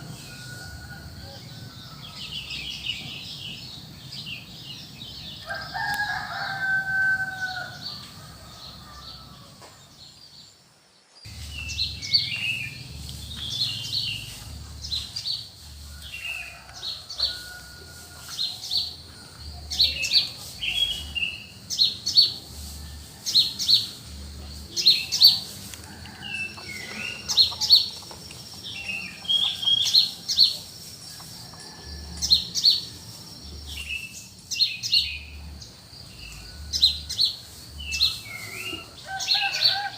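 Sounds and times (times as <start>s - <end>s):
rooster crowing: 0.0s - 2.8s, 5.4s - 9.7s, 15.8s - 19.0s, 24.9s - 27.8s, 37.8s - 39.9s
songbirds chirping: 0.0s - 39.9s.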